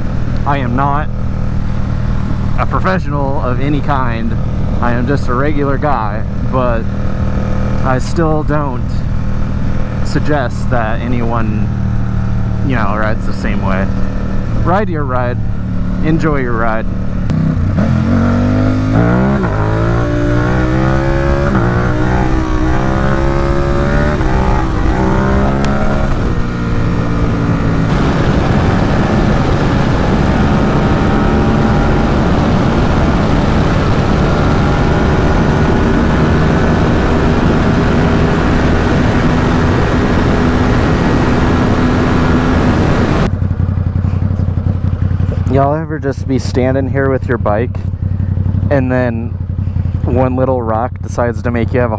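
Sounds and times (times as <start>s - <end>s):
motorcycle engine accelerating: 0.0s - 51.9s
loud wind rushing: 17.0s - 43.3s.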